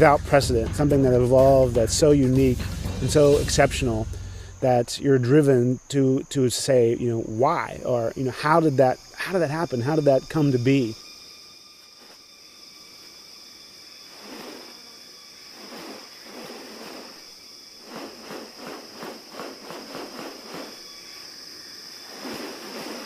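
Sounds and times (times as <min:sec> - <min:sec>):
high-pitched insect drone: 0:00.0 - 0:23.0
short rustling noises: 0:14.1 - 0:14.8, 0:15.5 - 0:20.9, 0:22.0 - 0:23.0.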